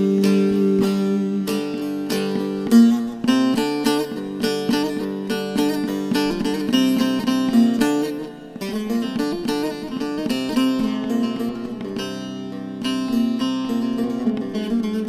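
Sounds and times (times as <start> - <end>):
plucked string instrument melody: 0.0 - 15.0.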